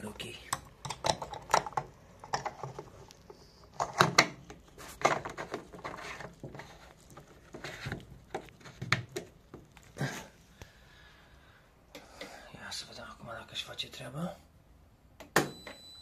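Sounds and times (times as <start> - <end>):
plastic parts clicking and knocking: 0.4 - 9.7.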